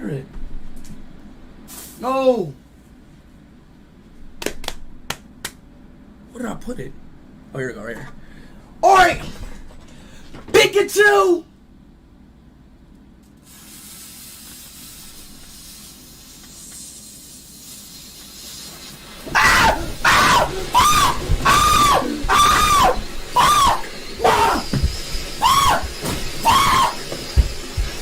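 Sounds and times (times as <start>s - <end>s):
firework fountain hissing: 1.7s - 2.0s, 13.4s - 28.0s
loud high rising and falling wails: 19.4s - 27.4s.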